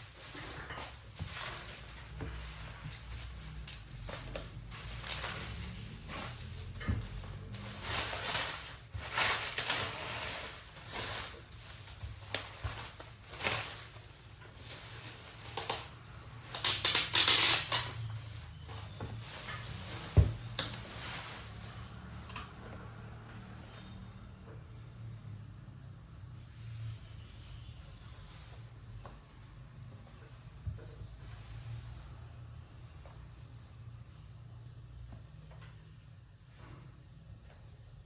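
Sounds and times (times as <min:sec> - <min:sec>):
packaging rustling: 0:00.0 - 0:22.3.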